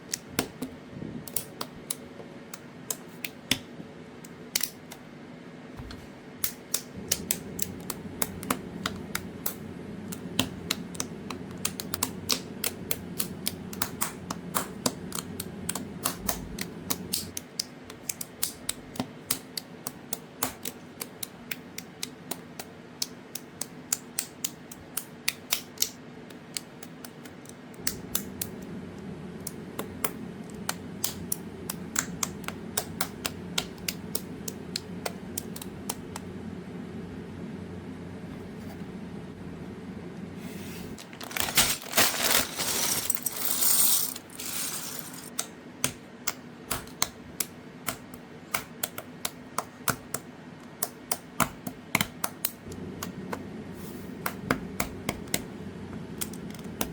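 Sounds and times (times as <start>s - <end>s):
steady low hum: 0.0s - 56.9s.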